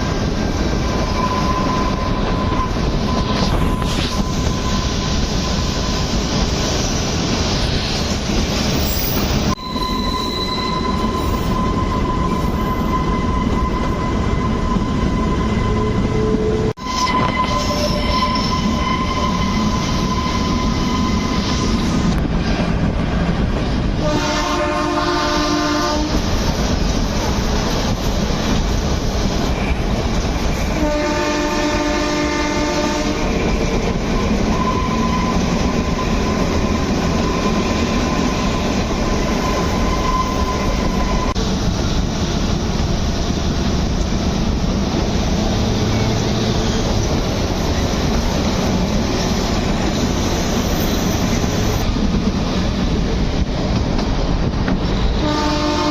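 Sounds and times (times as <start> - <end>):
locomotive horn blasts: 9.7 - 21.4, 24.0 - 26.2, 30.8 - 33.3, 55.2 - 55.9
train wheels clattering on track: 17.2 - 55.9.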